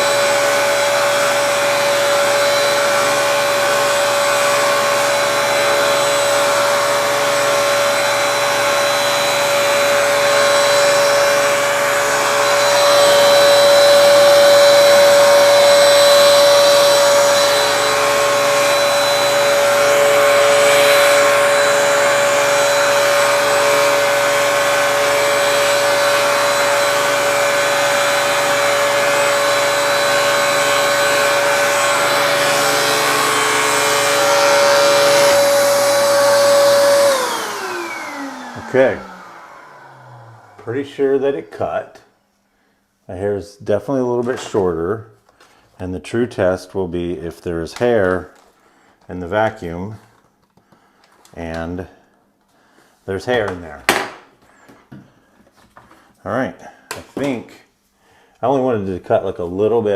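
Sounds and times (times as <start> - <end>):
electric clipper running: 0.0 - 40.7
vacuum cleaner whining: 0.0 - 42.1, 53.1 - 56.2.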